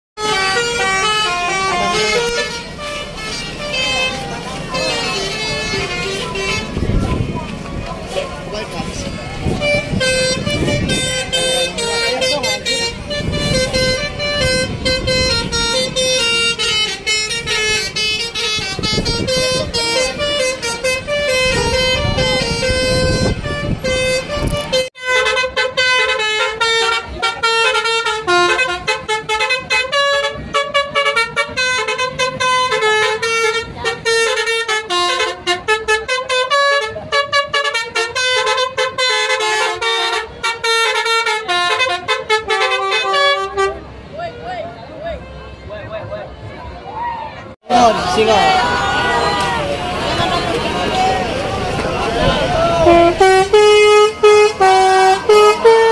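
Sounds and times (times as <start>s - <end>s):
musical bus horn playing a tune: 0.2s - 45.7s, 47.7s - 55.9s.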